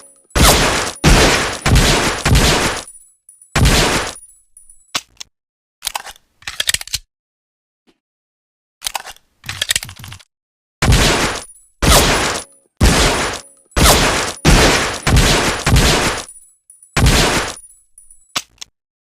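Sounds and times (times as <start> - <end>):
pistol shots echoing: 0.0 - 2.9, 11.9 - 16.3.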